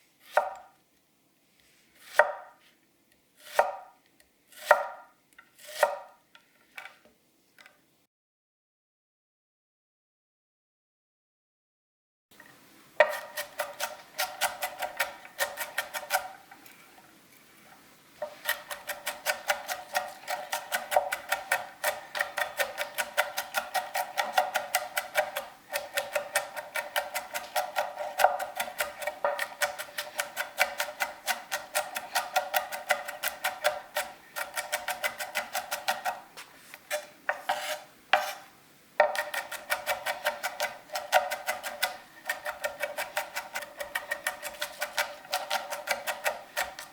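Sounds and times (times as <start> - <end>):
knife chopping on cutting board: 0.2 - 0.6, 2.0 - 2.6, 3.4 - 3.9, 4.5 - 5.0, 5.6 - 6.1, 13.0 - 16.4, 18.2 - 36.3, 36.9 - 38.4, 39.0 - 46.9.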